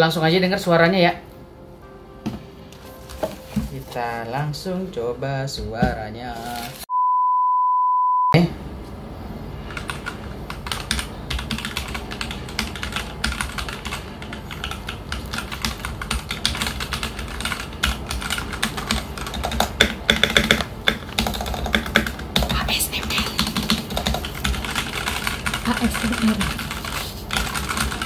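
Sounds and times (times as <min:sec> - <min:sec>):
mechanical keyboard typing: 0:09.7 - 0:28.0.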